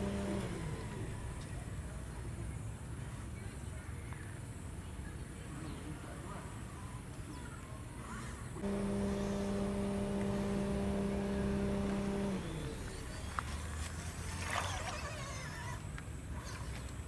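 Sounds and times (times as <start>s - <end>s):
electric motor whining: 0.0s - 1.2s, 8.6s - 15.8s.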